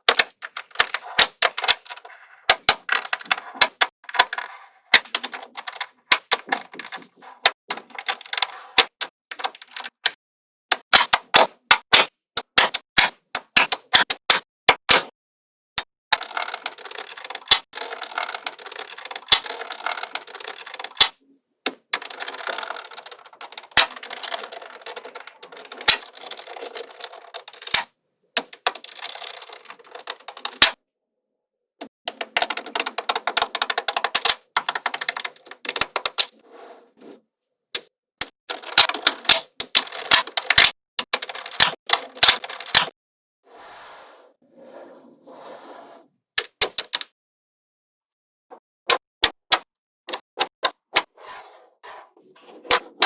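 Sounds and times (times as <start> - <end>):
magnetic balls snapping together: 8.8 - 15.1, 37.8 - 42.9, 46.4 - 47.1, 48.9 - 51.1
magnetic balls clattering: 38.5 - 42.9.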